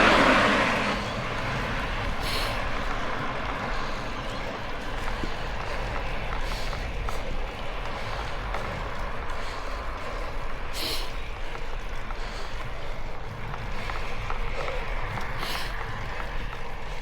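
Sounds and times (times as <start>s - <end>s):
heavy labouring breathing: 0.0s - 17.0s
wind noise on microphone: 0.0s - 17.0s.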